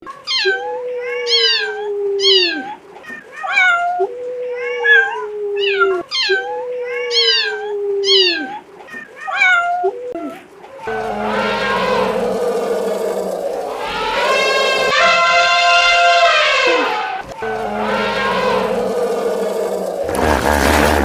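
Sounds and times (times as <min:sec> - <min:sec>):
animal calling: 0:10.1 - 0:21.0.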